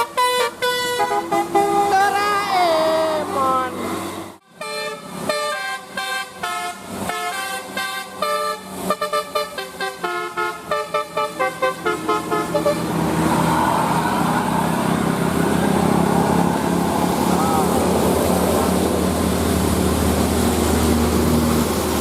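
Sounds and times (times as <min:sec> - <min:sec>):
multi-tone musical air horn: 0:00.0 - 0:13.0
rushing noise with low hum: 0:12.5 - 0:22.0.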